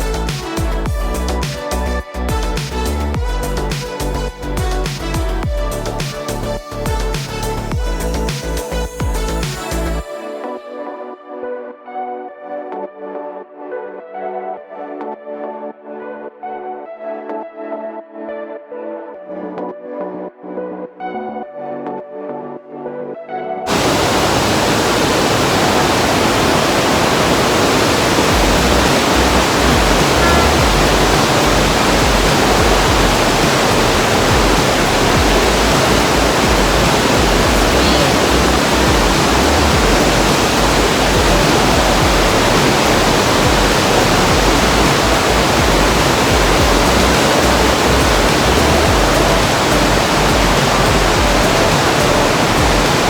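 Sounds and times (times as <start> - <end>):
waterfall rushing: 23.7 - 53.0
low rumble: 28.3 - 52.9.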